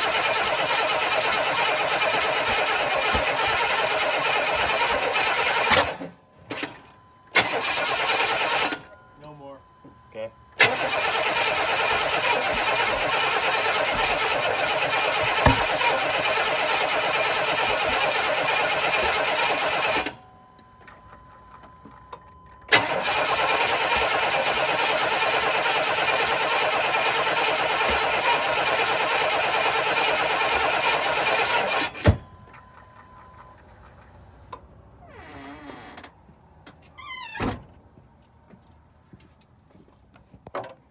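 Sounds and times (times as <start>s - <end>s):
engine cranking without starting: 0.0s - 9.4s, 10.5s - 20.2s, 22.7s - 34.2s.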